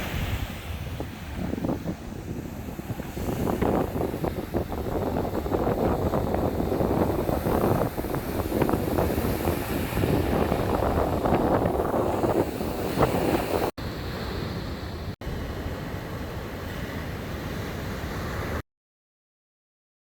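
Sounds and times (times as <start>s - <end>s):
wind buffeting microphone: 0.0s - 15.6s
surf breaking on beach: 0.0s - 18.6s.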